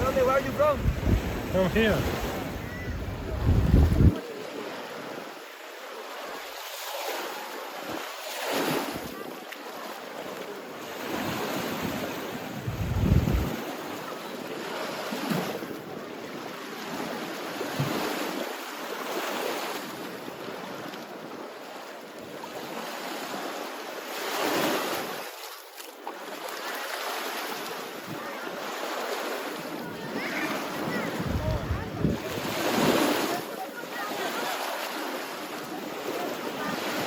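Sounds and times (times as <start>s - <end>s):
wind buffeting microphone: 0.0s - 4.2s, 12.6s - 13.6s, 30.9s - 33.0s
sea waves breaking on shore: 0.0s - 37.0s.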